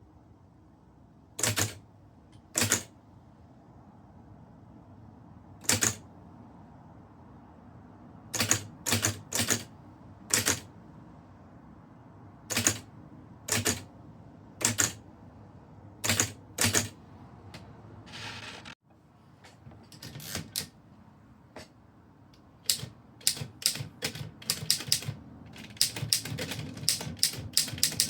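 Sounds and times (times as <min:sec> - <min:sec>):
typewriter keys clacking: 0:01.4 - 0:01.8, 0:02.6 - 0:02.9, 0:05.6 - 0:06.0, 0:08.4 - 0:09.7, 0:10.3 - 0:10.7, 0:12.5 - 0:12.8, 0:13.5 - 0:13.8, 0:14.6 - 0:15.0, 0:16.0 - 0:17.0, 0:19.9 - 0:20.7, 0:22.7 - 0:28.0.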